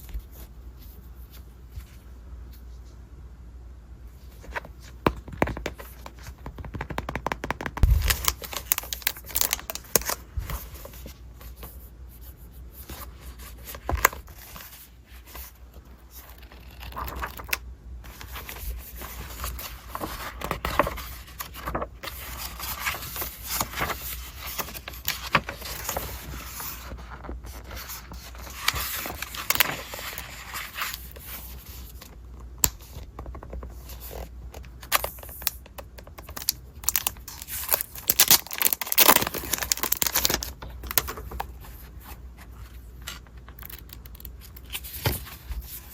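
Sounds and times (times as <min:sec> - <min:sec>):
clicks and taps: 0:05.1 - 0:07.9
packaging tearing and crinkling: 0:07.0 - 0:10.2, 0:16.2 - 0:17.6, 0:36.3 - 0:41.2.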